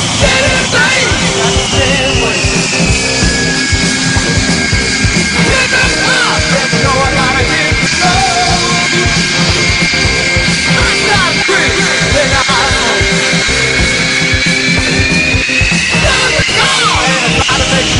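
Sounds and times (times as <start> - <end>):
fast driving drum beat: 0.0 - 17.9
loud rock music: 0.0 - 17.9
shouted vocals: 16.0 - 17.9.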